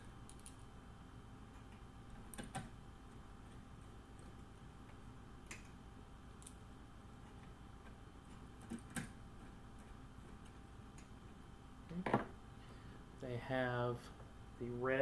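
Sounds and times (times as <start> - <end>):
low steady hum: 0.0 - 15.0
small parts clicking: 0.2 - 0.7.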